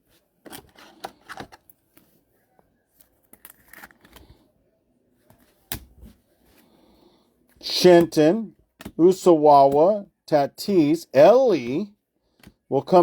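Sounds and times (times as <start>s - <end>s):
trading cards being flipped: 3.0s - 4.4s.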